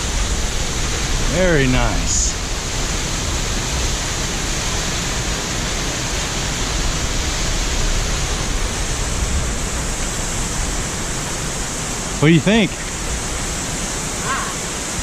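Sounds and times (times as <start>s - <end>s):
waterfall rushing: 0.0s - 15.0s.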